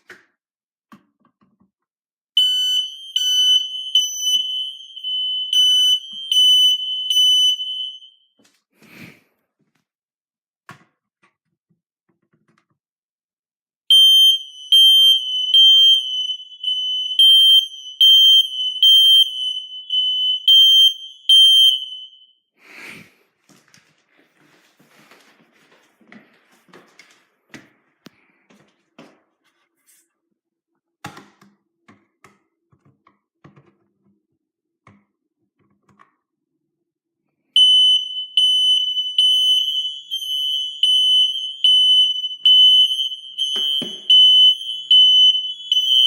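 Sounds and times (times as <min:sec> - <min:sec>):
smoke alarm pulsing horn: 0:02.4 - 0:08.3, 0:13.9 - 0:22.4, 0:37.6 - 0:46.0.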